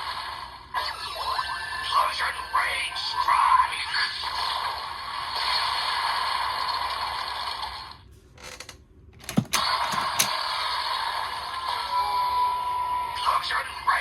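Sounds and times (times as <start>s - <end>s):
sharp plastic clicks: 8.4s - 10.3s.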